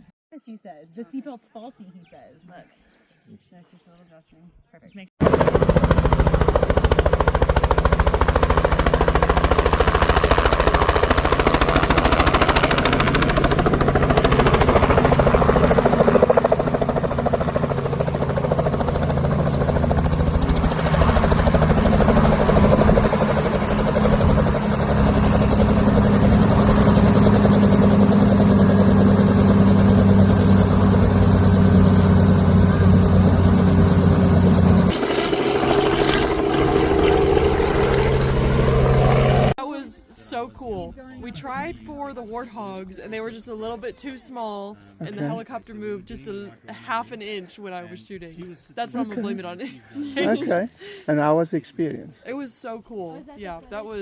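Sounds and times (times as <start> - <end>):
helicopter rotor beating: 5.2 - 39.6.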